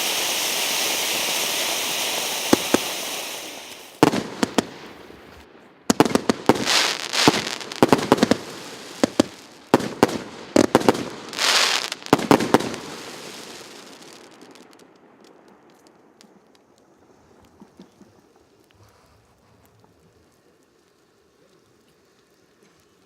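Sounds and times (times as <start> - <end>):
firework hissing sprays: 0.0 - 5.5, 6.1 - 16.4
firework cracks and crackling: 0.0 - 21.6.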